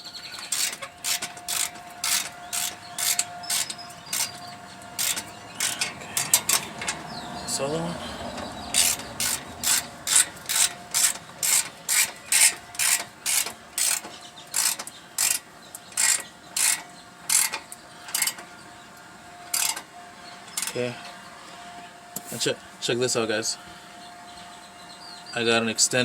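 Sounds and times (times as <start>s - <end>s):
ratchet wrench clicking: 0.4s - 4.4s, 5.0s - 7.0s, 8.7s - 18.4s, 19.5s - 19.8s.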